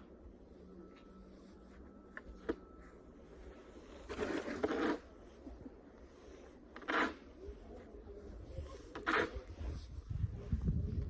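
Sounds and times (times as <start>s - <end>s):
snow scraping and crunching: 0.0s - 10.9s.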